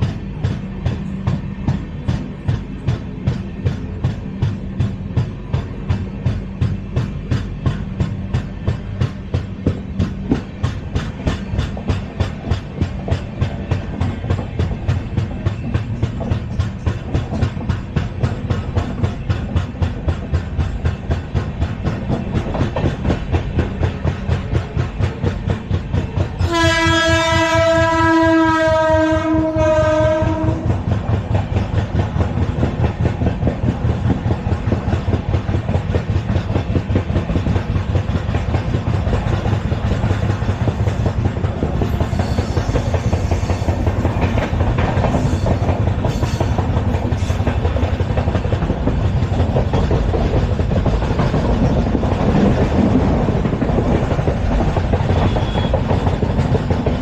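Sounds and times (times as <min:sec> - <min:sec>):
train wheels clickety-clack: 0:00.0 - 0:57.0
train horn: 0:26.4 - 0:30.9, 0:55.1 - 0:56.0.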